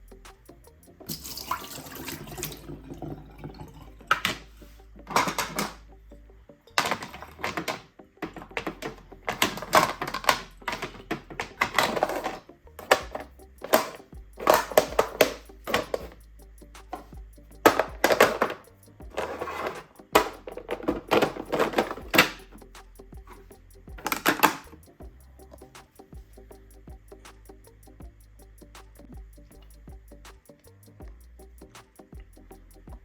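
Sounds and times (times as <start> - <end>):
tap water running and splashing: 1.1 - 4.4.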